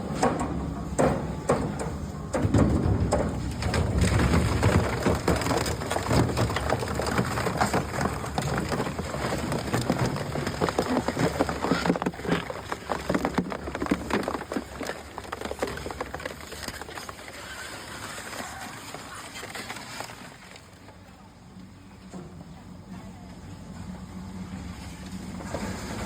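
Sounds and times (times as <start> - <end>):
shredder crushing refrigerator: 0.0 - 20.9
crackling and cracking: 1.8 - 21.7.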